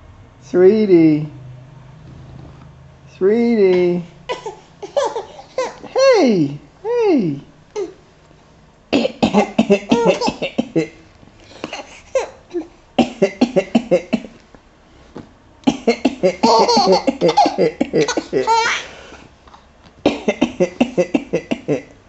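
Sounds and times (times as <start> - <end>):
baby squealing: 4.3 - 6.1, 18.1 - 19.0
baby laughing: 4.3 - 6.3, 7.8 - 8.0, 9.3 - 11.0, 11.6 - 14.3, 15.7 - 19.1
adult coughing: 9.0 - 11.0, 11.7 - 14.4, 15.6 - 18.9, 20.1 - 21.9.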